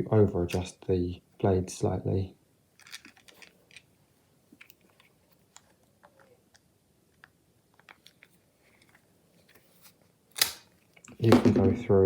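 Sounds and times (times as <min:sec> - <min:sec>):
plastic tool small clicks: 0:10.4 - 0:10.7.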